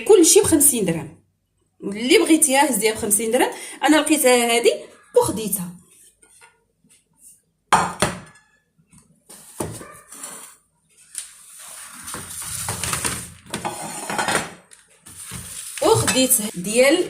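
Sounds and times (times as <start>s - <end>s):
glass kitchenware knocking: 7.7s - 8.4s.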